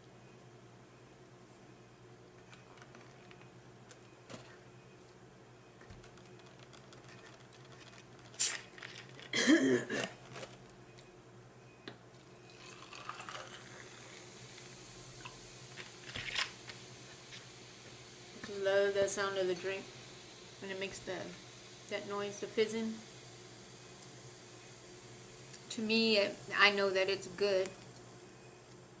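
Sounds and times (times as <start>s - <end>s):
drink fizzing: 6.0s - 9.4s, 12.4s - 16.7s.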